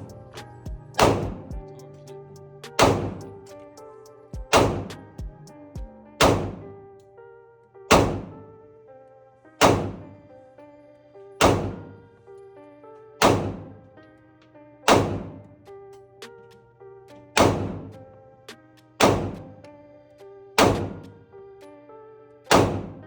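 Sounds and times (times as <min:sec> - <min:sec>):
background music with melody: 0:00.0 - 0:23.0
heavy sharp hits: 0:01.0 - 0:01.5, 0:02.7 - 0:03.4, 0:04.5 - 0:05.2, 0:06.2 - 0:06.7, 0:07.9 - 0:08.4, 0:09.6 - 0:10.1, 0:11.4 - 0:11.9, 0:13.2 - 0:13.7, 0:14.9 - 0:15.4, 0:17.4 - 0:17.9, 0:19.0 - 0:19.5, 0:20.6 - 0:21.0, 0:22.5 - 0:23.0.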